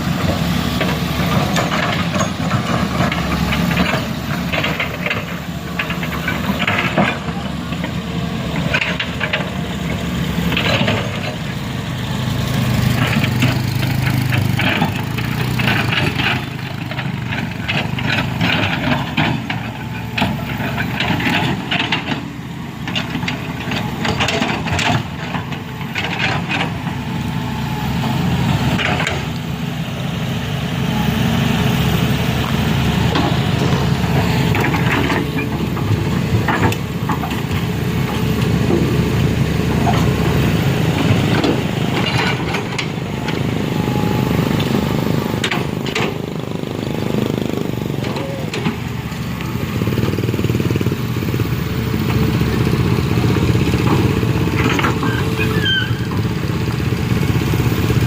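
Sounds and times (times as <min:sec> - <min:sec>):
heavy vehicle engine running: 0:00.0 - 0:58.0
knocks and clatter: 0:34.5 - 0:39.0.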